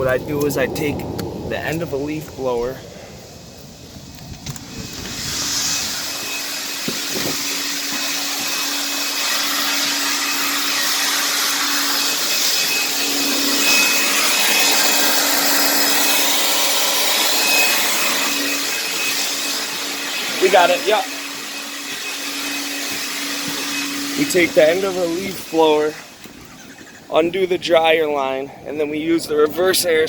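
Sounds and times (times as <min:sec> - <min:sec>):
leaf blower running: 0:04.0 - 0:27.1.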